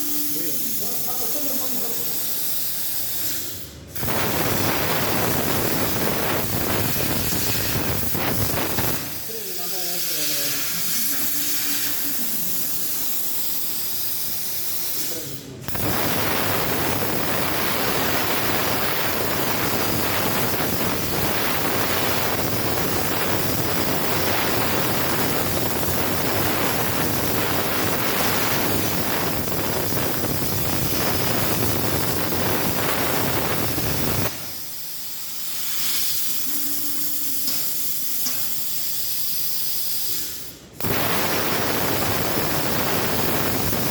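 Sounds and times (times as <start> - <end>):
air hissing from torch: 0.0 - 43.9
plasma arc cutting hiss: 0.0 - 43.9.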